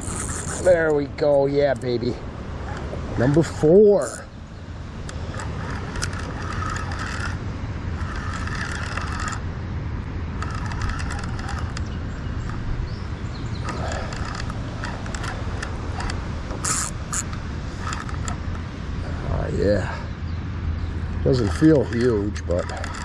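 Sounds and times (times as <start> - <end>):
fishing reel cranking whirr: 0.0 - 0.7, 5.1 - 9.4, 10.4 - 12.6, 13.6 - 18.4, 21.4 - 23.0.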